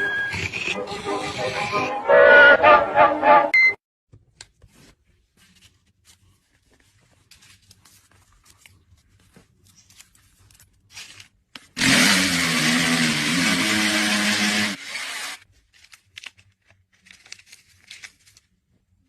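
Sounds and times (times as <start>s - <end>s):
small electric motor whirring: 11.8s - 15.4s.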